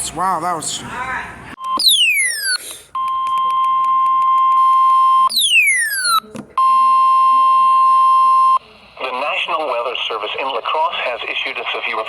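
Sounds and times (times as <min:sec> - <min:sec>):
emergency alert tone: 0:01.6 - 0:08.6.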